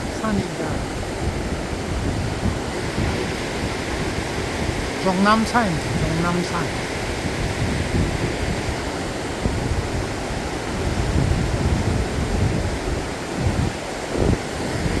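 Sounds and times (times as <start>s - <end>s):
river rushing: 0.0s - 15.0s
wind buffeting microphone: 0.0s - 15.0s.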